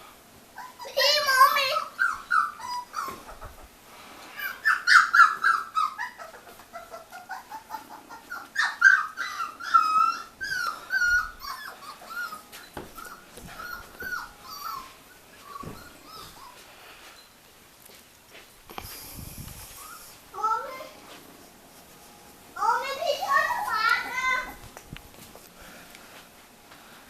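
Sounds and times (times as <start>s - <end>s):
puppies whimpering and whining: 0.6s - 17.3s, 19.6s - 20.8s.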